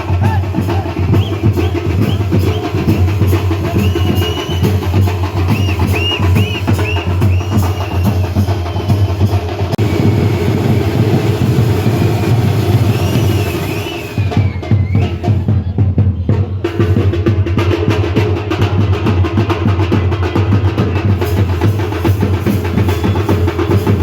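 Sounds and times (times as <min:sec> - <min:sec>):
fast loud drumming: 0:00.0 - 0:24.0
shrill whistles: 0:00.2 - 0:15.4, 0:22.5 - 0:24.0.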